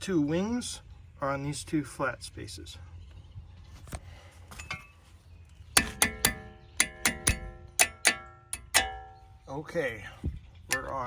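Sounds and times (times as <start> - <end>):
metal-on-metal strikes ringing: 5.8 - 9.5.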